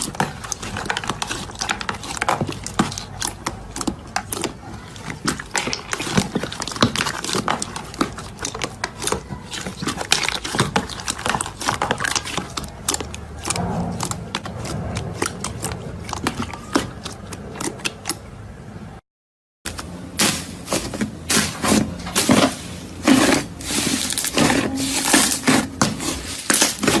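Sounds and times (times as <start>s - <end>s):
slime squished by hand: 0.0s - 18.3s.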